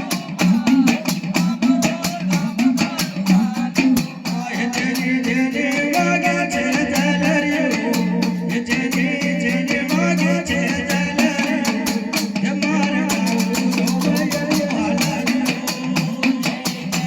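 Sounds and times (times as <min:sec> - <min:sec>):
rapid drum strokes: 0:00.0 - 0:17.0.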